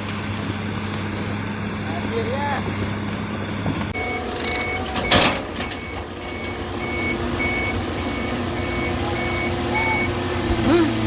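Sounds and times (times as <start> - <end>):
engine running: 0.0 - 11.0
reversing alarm beeping: 4.0 - 10.2.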